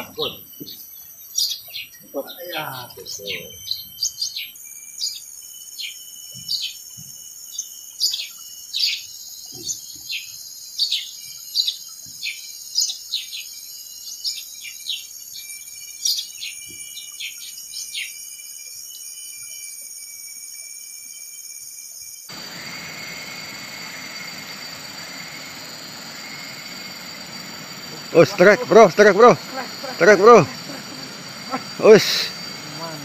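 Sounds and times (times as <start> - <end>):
bird chirping: 0.0 - 18.2, 22.3 - 33.0
high-pitched insect drone: 0.0 - 33.0.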